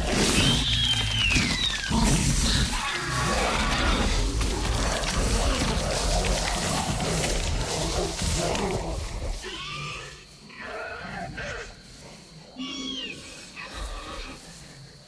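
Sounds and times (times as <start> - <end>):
dinosaur roar: 0.0 - 11.8.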